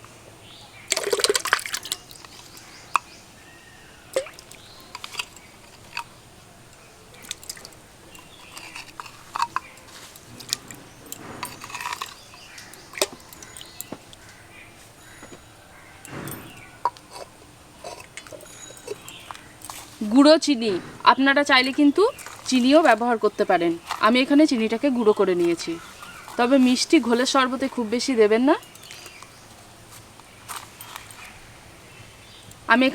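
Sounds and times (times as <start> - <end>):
spoon clicking against bucket: 0.9 - 3.2, 4.1 - 14.2, 16.0 - 19.9
loud clatter: 8.5 - 13.2.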